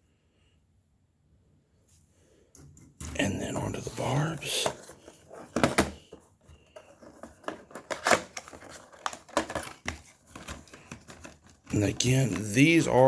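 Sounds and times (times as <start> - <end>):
plastic packaging crinkling: 4.1 - 13.0.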